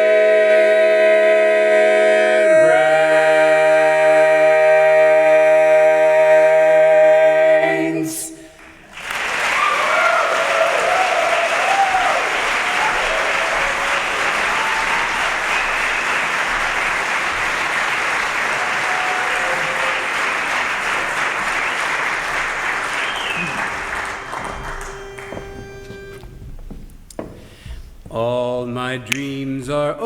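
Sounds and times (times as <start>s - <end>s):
audience applauding and cheering: 8.6s - 26.2s
audience whoops: 9.0s - 16.8s, 18.4s - 20.6s, 22.8s - 24.2s.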